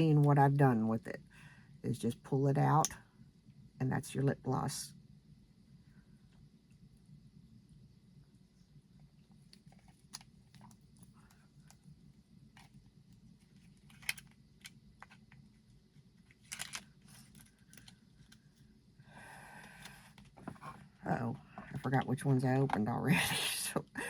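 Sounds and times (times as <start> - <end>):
faint low hum: 0.0 - 24.0
packaging clicks and rustles: 13.4 - 15.4, 16.2 - 18.6.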